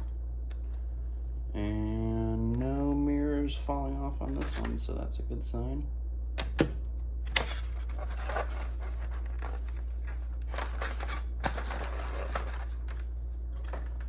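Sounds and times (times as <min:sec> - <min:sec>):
steady low hum: 0:00.0 - 0:14.0
packaging rustling and scraping: 0:07.3 - 0:14.0.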